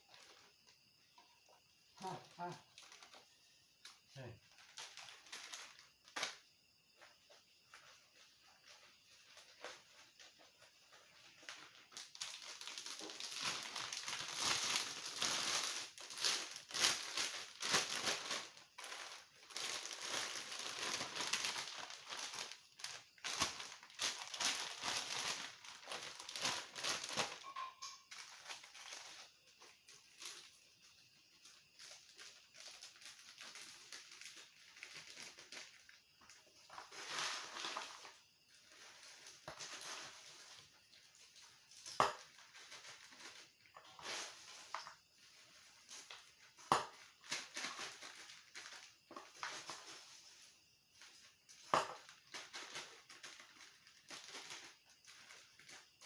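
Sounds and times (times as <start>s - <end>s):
fried chips rustling and crackling: 4.5s - 6.4s, 10.8s - 29.3s, 31.7s - 56.0s.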